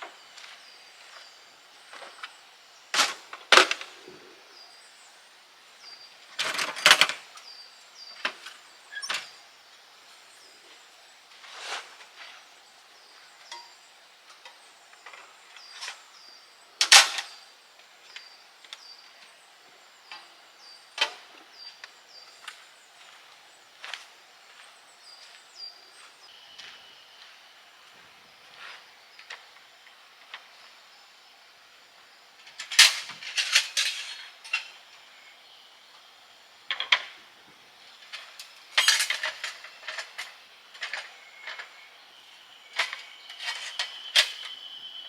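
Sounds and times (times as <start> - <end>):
faint high chirps: 40.9 - 45.0.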